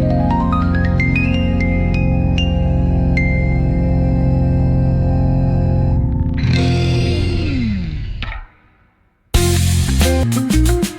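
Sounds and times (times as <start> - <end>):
held low chords: 0.0 - 8.1.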